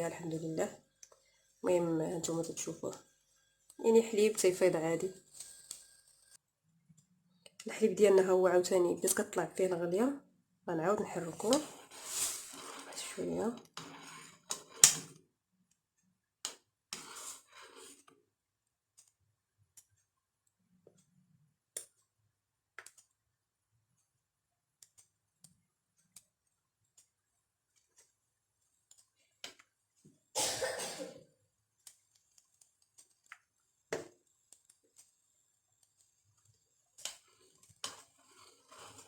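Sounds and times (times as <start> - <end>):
utensil stirring milk in saucepan: 11.0 - 15.2, 16.9 - 18.4, 31.5 - 39.0
utensil scraping against pot: 11.2 - 15.0, 16.9 - 18.1, 37.0 - 39.0.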